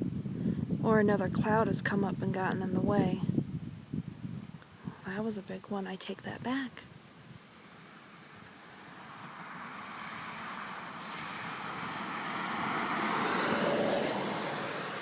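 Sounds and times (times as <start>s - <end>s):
car tyre noise passing: 7.1s - 15.0s.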